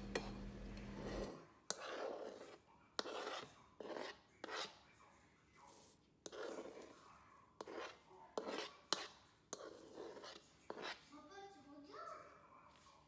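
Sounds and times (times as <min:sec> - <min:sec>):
rasping food scrapes: 0:00.9 - 0:04.8, 0:05.6 - 0:11.1.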